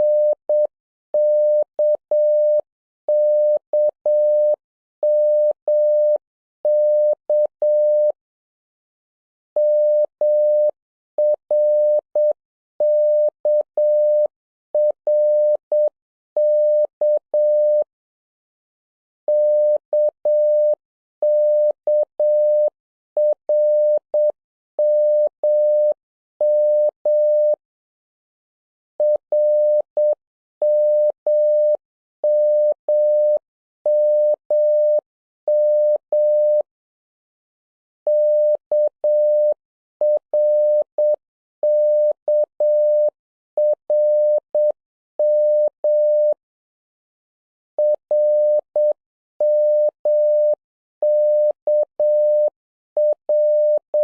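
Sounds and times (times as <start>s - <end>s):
morse code beeps: 29.0s - 36.6s, 38.1s - 46.4s, 47.8s - 54.0s.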